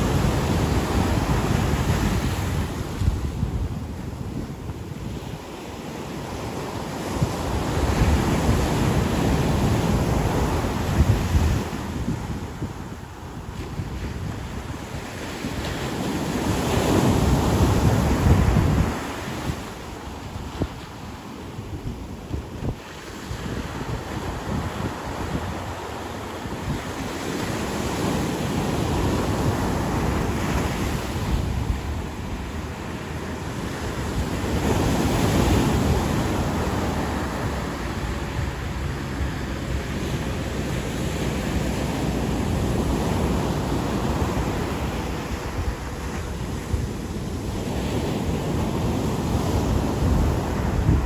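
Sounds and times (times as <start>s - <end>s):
wind buffeting microphone: 0.0s - 51.0s
ocean surf breaking: 22.8s - 51.0s.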